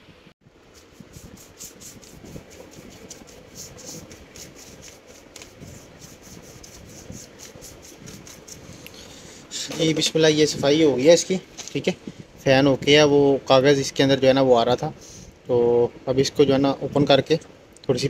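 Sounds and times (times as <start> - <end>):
rapid rubbing strokes: 0.5 - 11.4.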